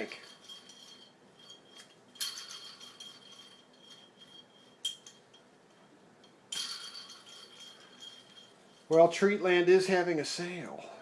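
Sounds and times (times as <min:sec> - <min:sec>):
metal parts clinking: 0:00.0 - 0:05.5, 0:06.2 - 0:09.2.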